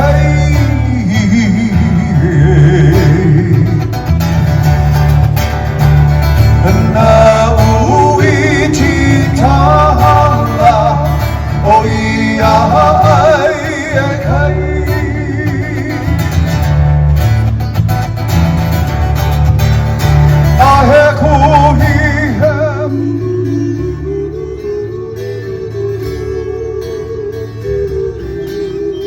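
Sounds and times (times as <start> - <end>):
person singing with vibrato: 0.0 - 4.0, 6.6 - 16.4, 20.6 - 29.0
bass line: 0.0 - 29.0
plucked guitars: 0.0 - 29.0.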